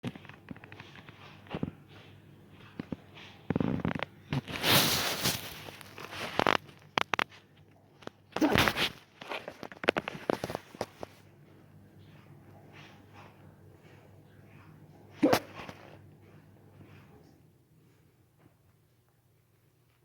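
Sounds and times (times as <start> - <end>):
person hiccuping: 15.2 - 15.6.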